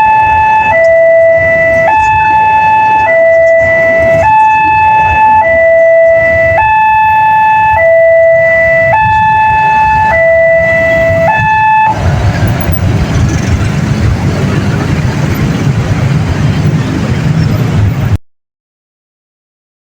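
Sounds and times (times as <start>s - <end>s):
level crossing two-tone alarm: 0.0s - 12.0s
steady rumbling noise: 0.0s - 18.2s.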